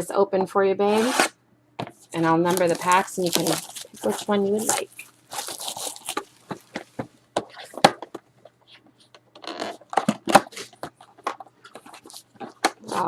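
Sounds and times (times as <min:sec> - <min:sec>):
wrappers crinkling and tearing: 0:02.5 - 0:07.0, 0:11.8 - 0:13.0.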